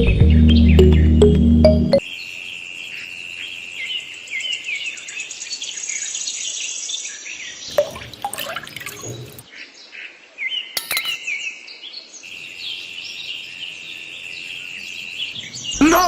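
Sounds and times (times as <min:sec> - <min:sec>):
background music: 0:00.0 - 0:02.0
birds chirping: 0:00.0 - 0:06.4, 0:12.2 - 0:16.0
sharp knocks and clinks: 0:10.8 - 0:11.2.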